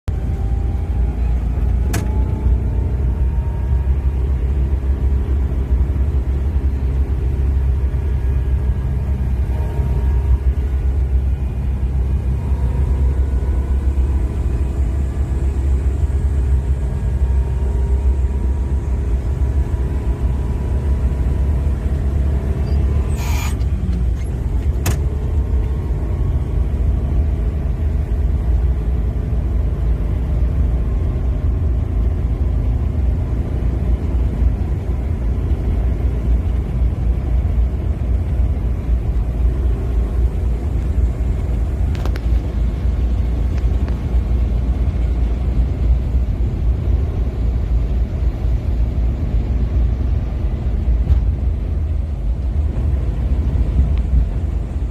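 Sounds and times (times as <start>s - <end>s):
steady low rumble: 0.0s - 54.9s.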